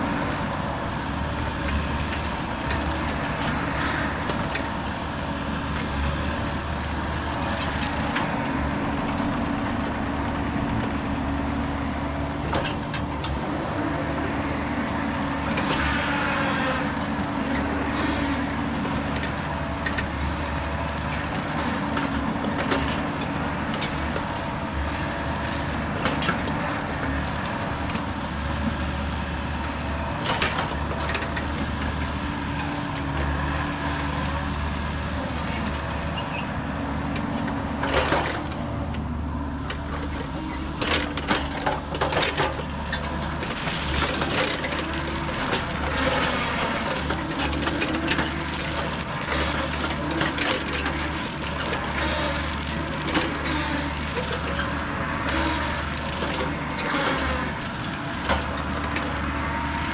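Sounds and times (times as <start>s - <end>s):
mini excavator running: 0.0s - 59.9s
woody stems cracking: 13.3s - 28.9s, 43.0s - 59.9s
brush cutter head mulching: 43.3s - 59.9s.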